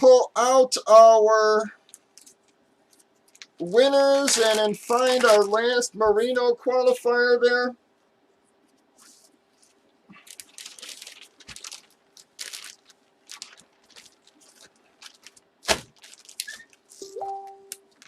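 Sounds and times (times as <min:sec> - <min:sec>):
plastic packaging crinkling: 0:01.8 - 0:05.9, 0:09.0 - 0:18.0.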